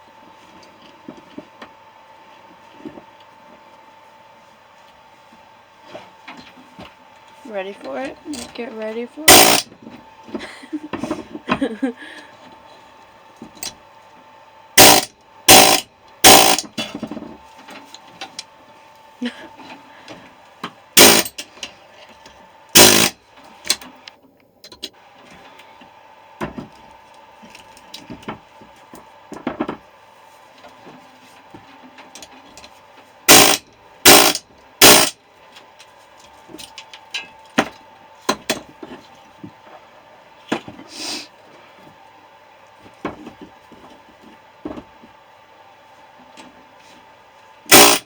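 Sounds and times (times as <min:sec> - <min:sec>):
loud metal clanks: 0:09.3 - 0:09.6, 0:14.8 - 0:16.6, 0:21.0 - 0:21.4, 0:22.8 - 0:23.1.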